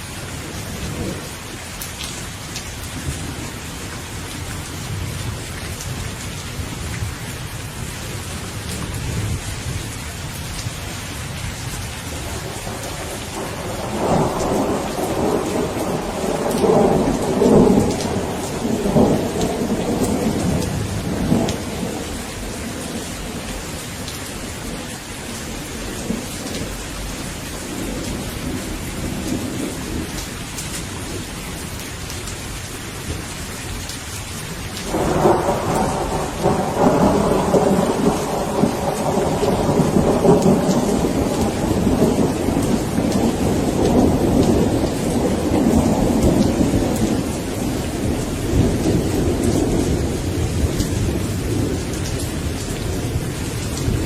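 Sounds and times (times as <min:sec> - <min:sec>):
steady rain: 0:00.0 - 0:54.0
rolling thunder: 0:10.6 - 0:24.1, 0:34.8 - 0:54.0.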